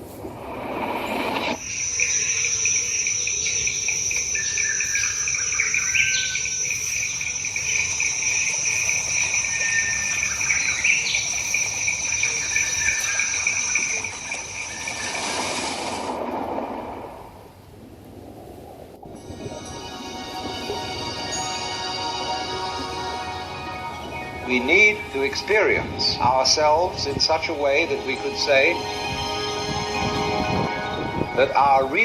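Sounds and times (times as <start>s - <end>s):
high shrill insect trill: 1.6s - 16.0s, 19.2s - 26.3s
low pulsing insect trill: 1.6s - 16.1s, 19.0s - 32.0s
short insect chirps: 1.6s - 16.1s.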